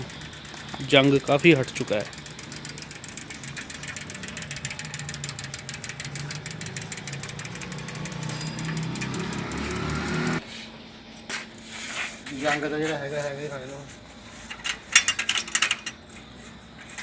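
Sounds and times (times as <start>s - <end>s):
machine rattling over hum: 0.0s - 10.4s.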